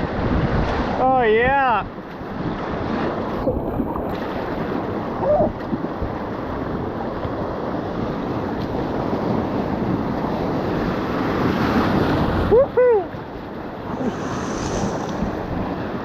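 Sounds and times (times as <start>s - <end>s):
rushing river whitewater: 10.2s - 16.0s.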